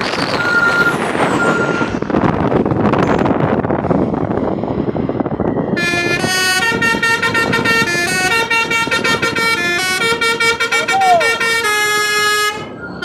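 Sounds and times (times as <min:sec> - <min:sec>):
musical multi-tone horn: 0:05.8 - 0:13.0.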